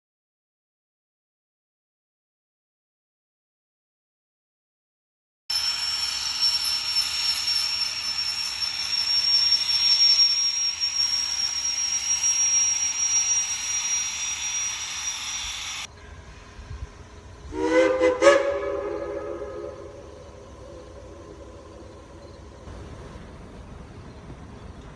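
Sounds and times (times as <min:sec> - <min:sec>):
steam whistle toots: 0:05.5 - 0:15.9, 0:17.5 - 0:22.5
steam locomotive hissing: 0:05.5 - 0:24.9.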